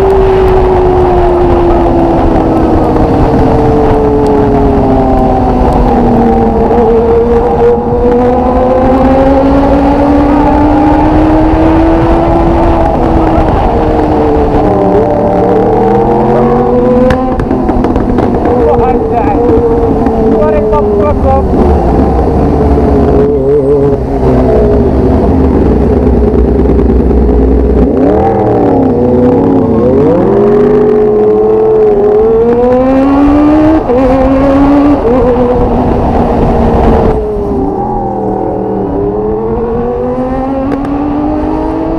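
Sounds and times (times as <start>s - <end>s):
motorcycle engine revving: 0.0s - 41.9s
wind and road noise rumble: 0.0s - 41.9s
motorcycle engine running: 11.9s - 31.0s.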